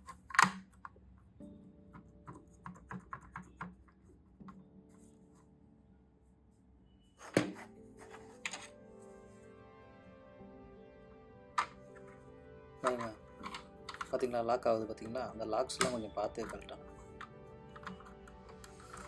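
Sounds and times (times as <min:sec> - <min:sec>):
plastic keyboard keys clicking: 0:00.0 - 0:01.0, 0:01.9 - 0:04.0, 0:12.8 - 0:14.2, 0:15.7 - 0:19.0
soft background music: 0:00.0 - 0:19.0.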